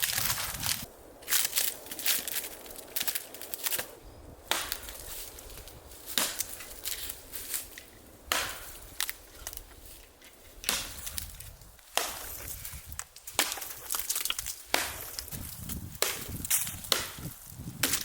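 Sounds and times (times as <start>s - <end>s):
axe chopping wood: 4.5s - 5.0s, 6.1s - 7.1s, 8.3s - 9.1s, 10.6s - 12.6s, 13.2s - 18.0s.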